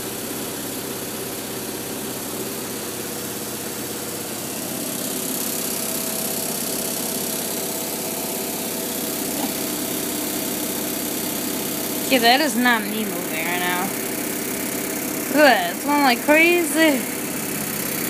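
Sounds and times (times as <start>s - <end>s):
washing machine whirring and shaking: 0.0s - 18.0s.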